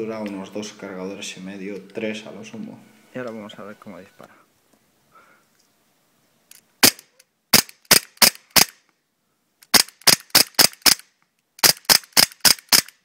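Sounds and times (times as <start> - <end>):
airsoft pistol shots: 6.8 - 8.8, 11.6 - 13.0.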